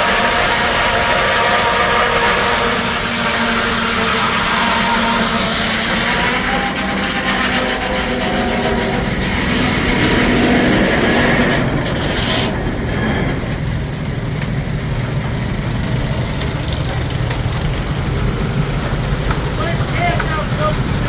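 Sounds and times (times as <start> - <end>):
sawmill running: 0.0 - 21.0.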